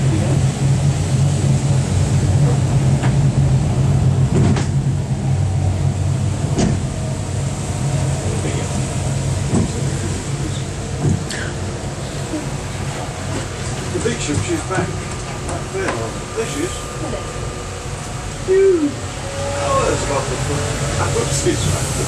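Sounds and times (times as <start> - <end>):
road train engine humming: 0.0 - 22.0
carriages knocking and rattling: 8.4 - 11.7, 12.7 - 16.6.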